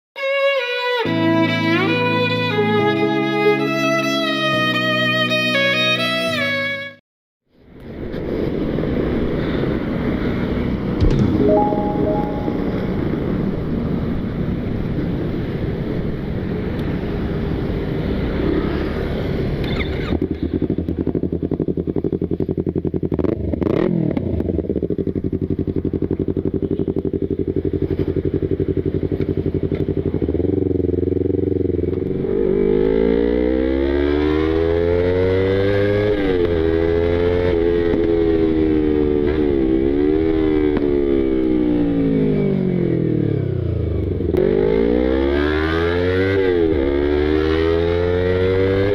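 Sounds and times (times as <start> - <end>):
motorcycle engine revving: 18.4 - 48.9.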